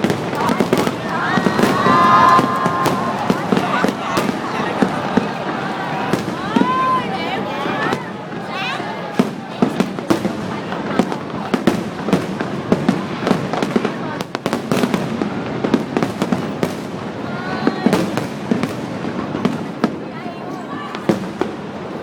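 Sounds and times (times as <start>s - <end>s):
distant fireworks rumble: 0.0s - 22.0s
fireworks sharp bangs: 0.0s - 22.0s.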